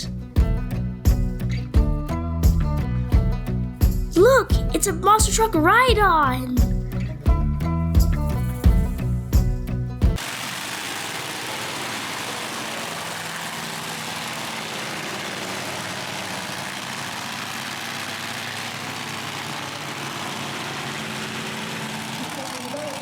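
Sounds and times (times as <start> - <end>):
vehicle engine idling: 6.6 - 23.0.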